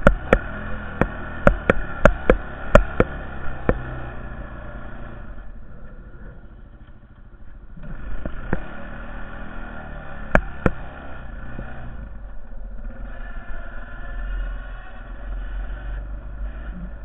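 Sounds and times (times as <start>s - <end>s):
sharp knocks: 0.0s - 4.0s
quad bike engine running: 0.0s - 17.0s.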